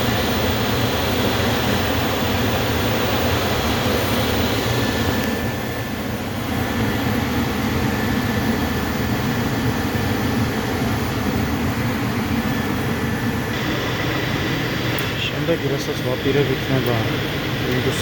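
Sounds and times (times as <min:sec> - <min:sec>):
gas furnace rushing hum: 0:00.0 - 0:18.0.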